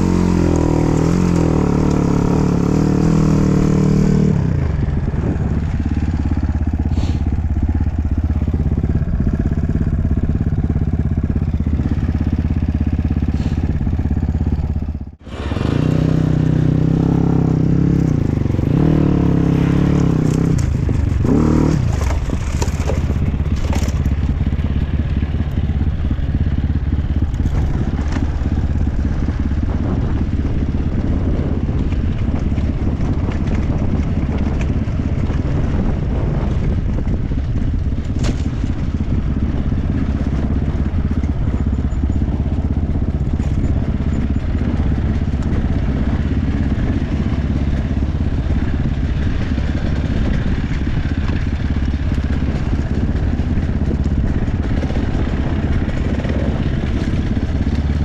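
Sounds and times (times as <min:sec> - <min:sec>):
dirt bike engine revving: 0:00.0 - 0:37.4
bike clattering over rough ground: 0:19.7 - 0:26.4, 0:27.0 - 0:58.0.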